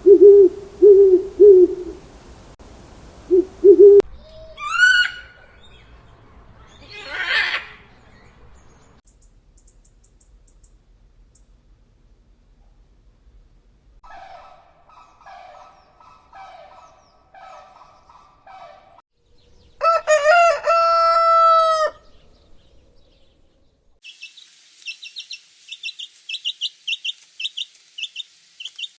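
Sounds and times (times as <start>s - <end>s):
bird call: 0.0s - 4.0s
faint high chirps: 0.0s - 4.0s
owl hooting: 0.0s - 4.0s.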